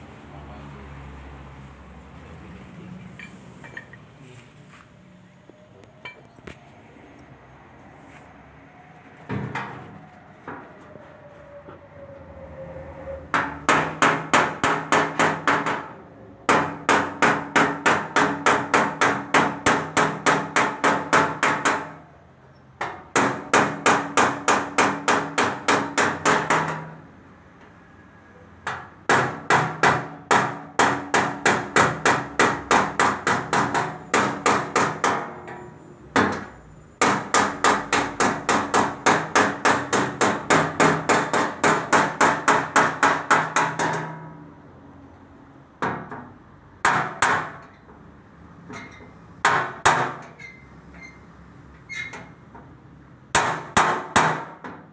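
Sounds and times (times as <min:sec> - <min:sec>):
hammer beating on sheet metal: 0:13.3 - 0:22.0, 0:22.8 - 0:27.0, 0:28.6 - 0:35.4, 0:36.2 - 0:44.4, 0:45.8 - 0:47.8, 0:49.4 - 0:50.3, 0:53.3 - 0:54.9.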